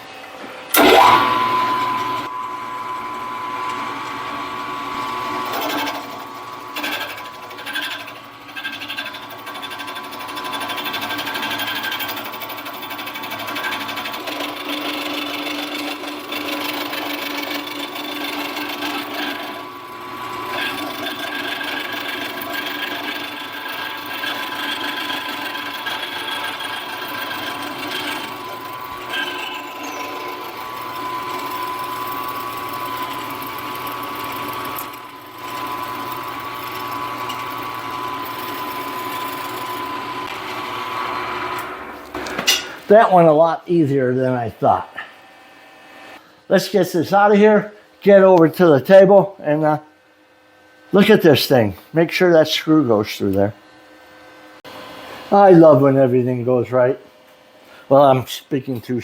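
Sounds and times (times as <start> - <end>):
cutter cutting metal: 0.0 - 45.1
milling machine whine: 0.0 - 49.8.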